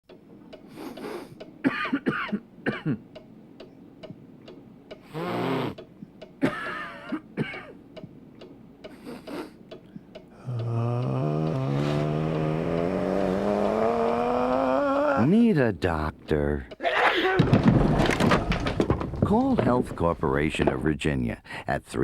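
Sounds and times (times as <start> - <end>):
clock ticking: 0.1 - 16.8.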